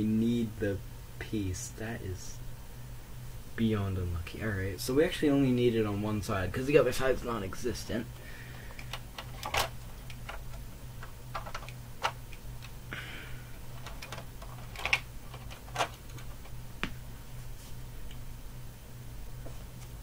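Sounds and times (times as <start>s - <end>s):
steady low hum: 0.0s - 20.0s.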